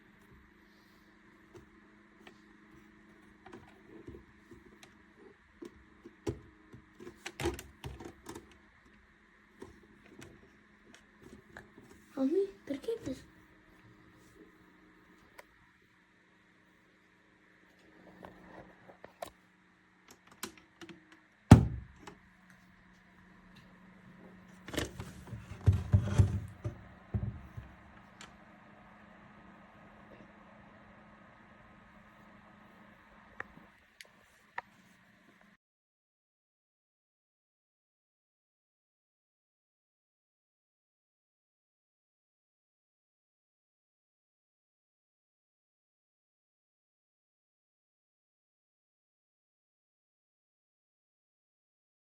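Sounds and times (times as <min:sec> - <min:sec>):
faint steady hum: 0:00.0 - 0:35.6
handling knocks and rattles: 0:24.7 - 0:27.8.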